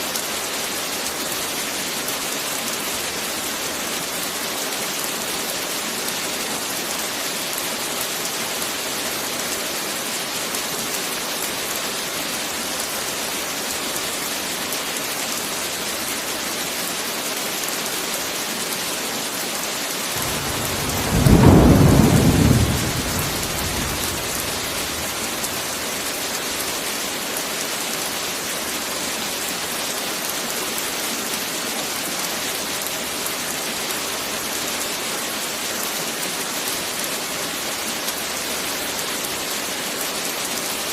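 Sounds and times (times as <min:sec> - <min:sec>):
heavy rain hiss: 0:20.0 - 0:29.8
thunder rumble: 0:20.2 - 0:26.0.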